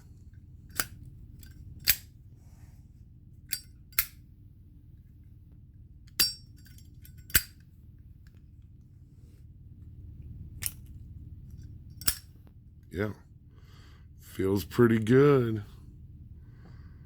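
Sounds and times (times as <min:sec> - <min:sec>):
lighter lid clicking open and shut: 0:00.7 - 0:01.0, 0:01.8 - 0:02.1, 0:03.5 - 0:04.2.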